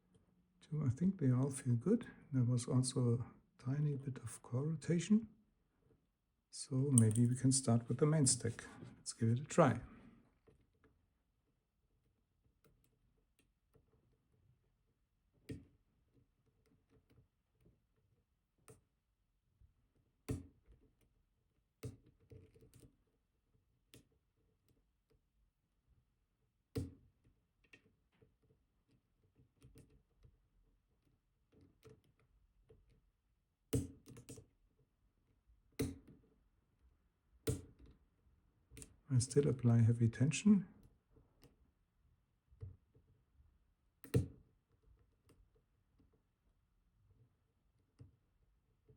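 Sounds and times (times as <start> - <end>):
lock pick metallic clicks: 7.0 - 7.4.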